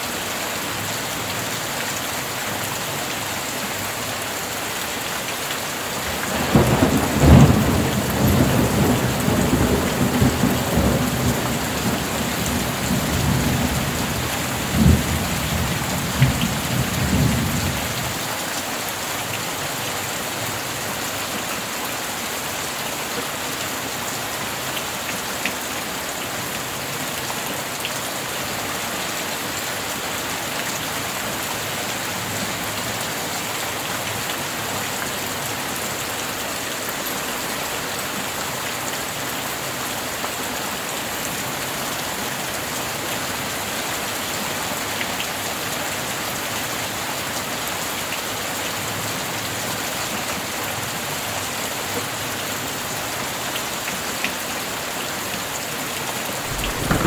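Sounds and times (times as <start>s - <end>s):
steady rain falling: 0.0s - 57.0s
low thunder rumble: 6.0s - 18.2s, 56.4s - 57.0s.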